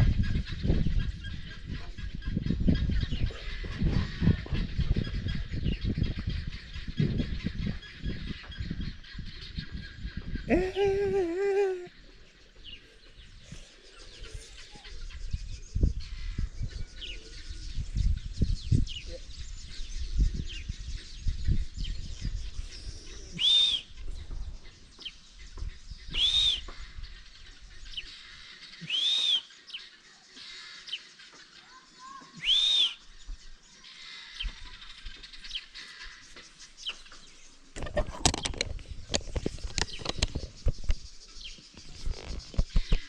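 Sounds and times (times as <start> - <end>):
bird calling: 5.8 - 15.2, 23.0 - 24.1, 26.0 - 29.7, 30.4 - 33.1
sharp clicks and knocks: 37.8 - 41.0.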